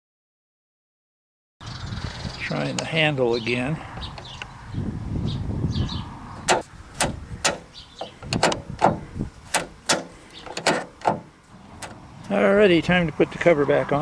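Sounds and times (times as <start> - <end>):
door latch clicking: 6.4 - 12.2.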